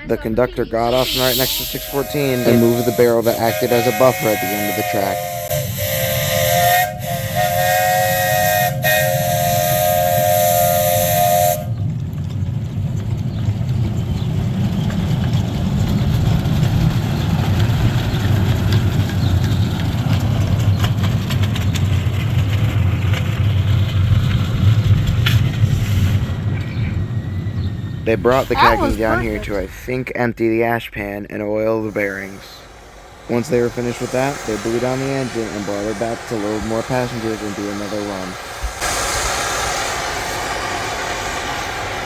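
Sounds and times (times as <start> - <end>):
low rumble with hiss: 0.0 - 6.3, 27.9 - 38.9
steam locomotive whistle: 0.9 - 11.8, 33.3 - 42.0.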